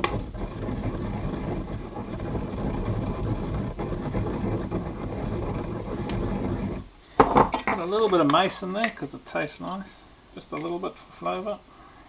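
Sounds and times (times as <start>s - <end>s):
pestle scraping in mortar: 0.0s - 7.3s.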